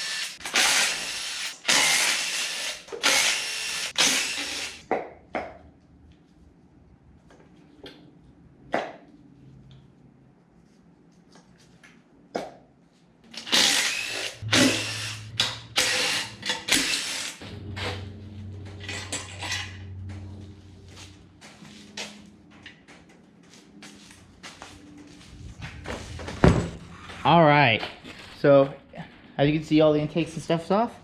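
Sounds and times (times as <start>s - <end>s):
power tool running: 0.0s - 4.8s, 13.3s - 18.0s.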